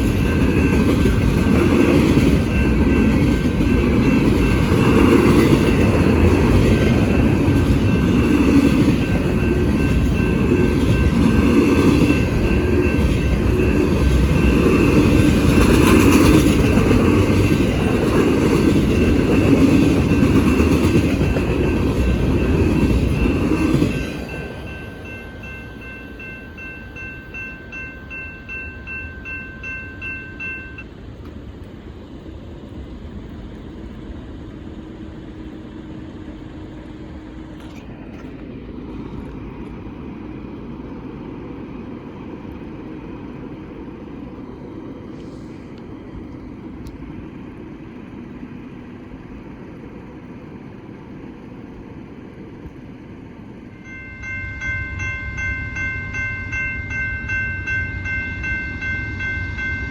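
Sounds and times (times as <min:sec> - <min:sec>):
steady ringing tone: 0:00.0 - 0:31.0, 0:53.1 - 0:59.9
freight train rumbling past: 0:00.0 - 0:59.9.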